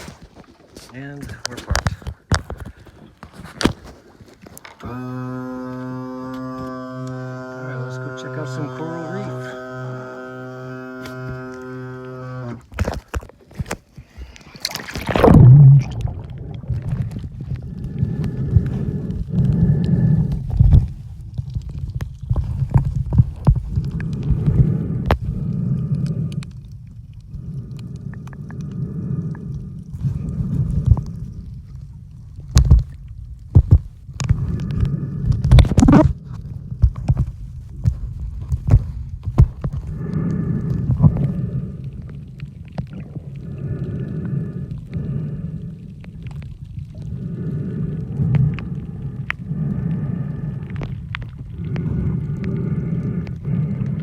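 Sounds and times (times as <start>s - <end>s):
underwater rumbling and gurgling: 0.0s - 54.0s
steady hum: 4.7s - 13.2s, 14.8s - 20.9s
loud splash into water: 14.6s - 16.8s.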